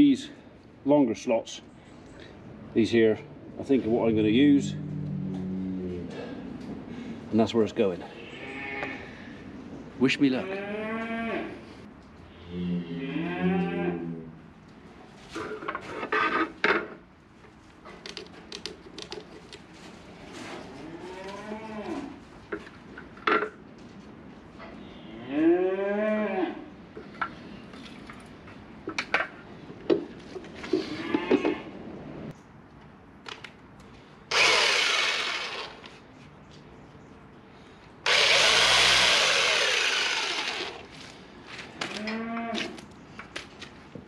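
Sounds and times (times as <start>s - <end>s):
young cattle mooing: 10.5s - 11.6s, 12.6s - 14.1s.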